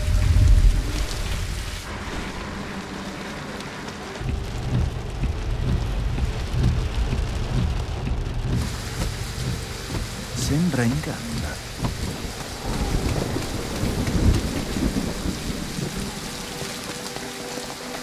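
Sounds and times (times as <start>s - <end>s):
thunder rumbling: 0.0s - 17.3s
heavy rain: 0.0s - 18.0s.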